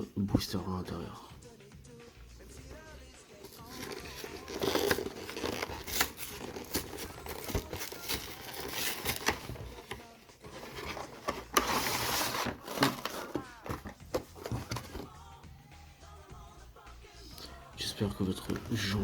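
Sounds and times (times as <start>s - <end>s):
plastic wrapping crackling: 3.5s - 15.1s.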